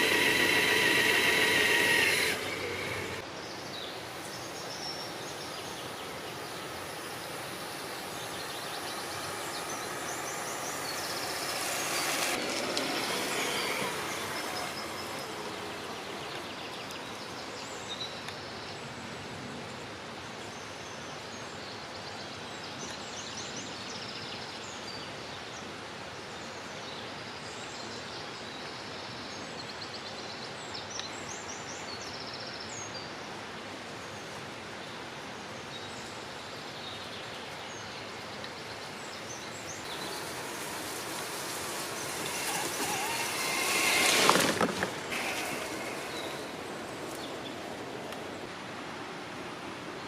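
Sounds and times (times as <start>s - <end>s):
birds chirping: 0.0s - 18.9s, 36.7s - 48.6s
steady outdoor hiss: 0.0s - 50.0s.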